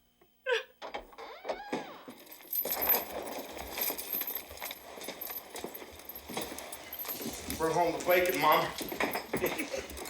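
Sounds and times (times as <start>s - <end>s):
knocks and clatter: 2.1s - 10.0s.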